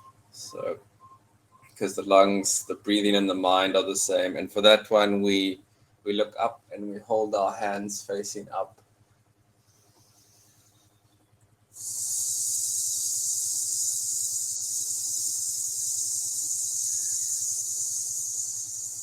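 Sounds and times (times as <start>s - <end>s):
long hiss breathed through teeth: 11.8s - 18.8s.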